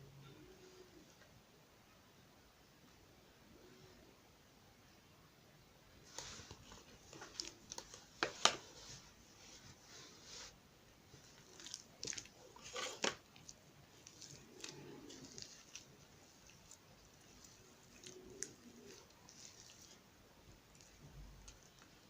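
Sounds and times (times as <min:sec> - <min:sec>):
slime squelching by hand: 0:06.1 - 0:22.0.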